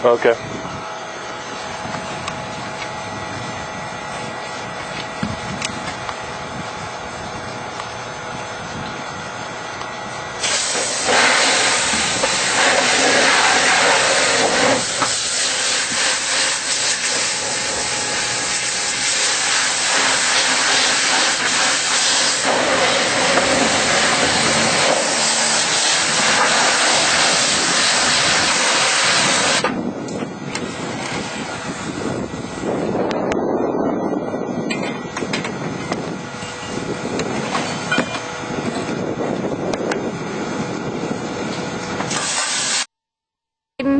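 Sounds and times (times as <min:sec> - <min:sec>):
rushing air hiss: 0:10.4 - 0:29.6, 0:42.1 - 0:42.9.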